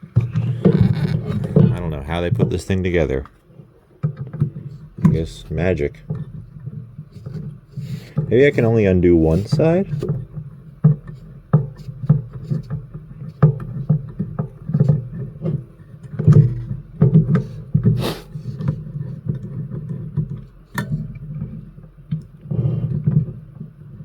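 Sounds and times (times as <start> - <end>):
hissing scrape: 18.0 - 18.5.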